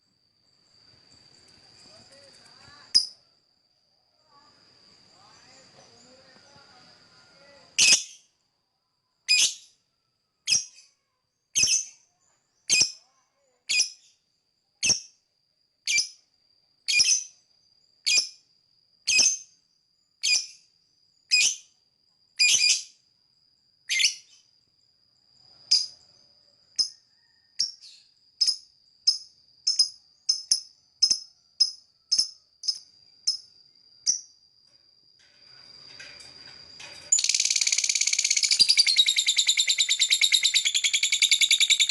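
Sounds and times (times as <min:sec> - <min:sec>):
faint steady high tone: 0:01.1 - 0:11.3
lovebird chirping: 0:09.3 - 0:09.7, 0:23.9 - 0:24.4, 0:37.1 - 0:41.9.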